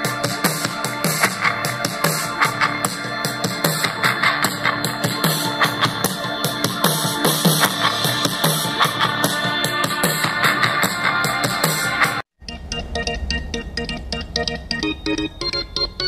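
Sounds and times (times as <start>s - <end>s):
rock song through small speaker: 0.0s - 12.8s.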